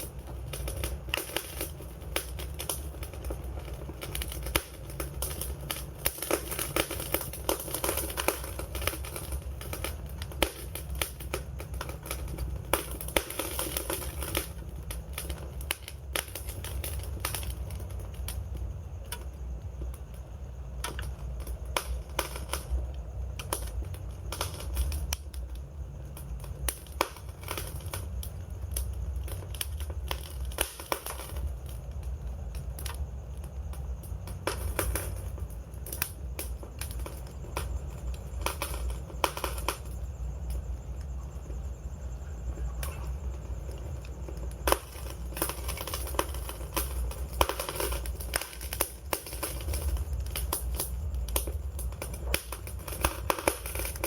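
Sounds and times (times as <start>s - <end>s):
low rumble of flames: 0.0s - 54.0s
wood fire crackling and popping: 0.0s - 54.0s.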